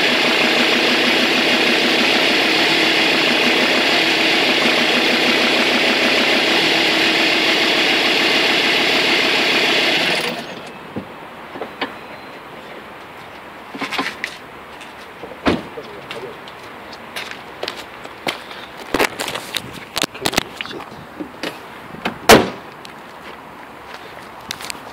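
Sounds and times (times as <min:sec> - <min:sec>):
diesel engine idling: 0:00.0 - 0:10.9
steady belt whine: 0:00.0 - 0:11.0.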